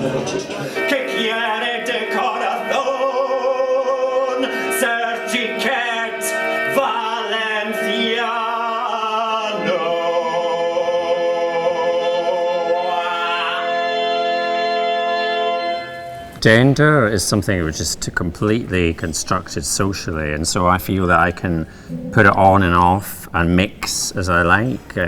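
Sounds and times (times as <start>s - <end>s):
person singing long wavering notes: 0.7s - 16.2s
sustained instrumental tones: 15.5s - 25.0s.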